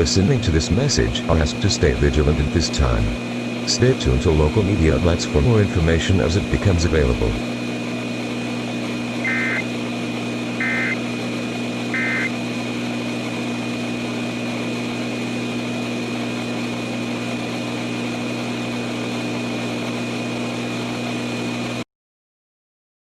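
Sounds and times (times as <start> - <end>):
radio static hum and hiss: 0.0 - 7.6, 9.2 - 9.8, 10.4 - 12.6
data tone bursts: 9.2 - 9.7, 10.6 - 11.0, 12.0 - 12.4.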